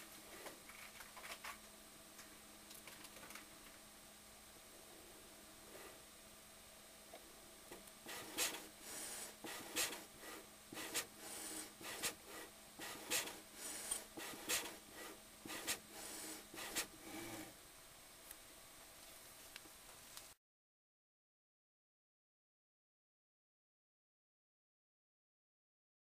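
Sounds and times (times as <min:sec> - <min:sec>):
faint steady hum: 0:00.0 - 0:20.4
machine rasping strokes: 0:08.0 - 0:17.5.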